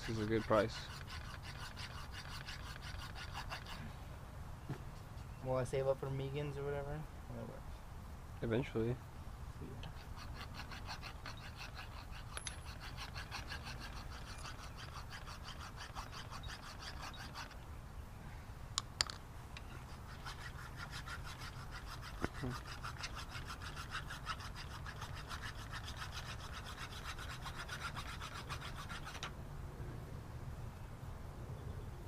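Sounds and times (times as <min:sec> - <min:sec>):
hand tool rasping strokes: 0:00.0 - 0:03.9, 0:09.8 - 0:17.6, 0:19.7 - 0:29.3.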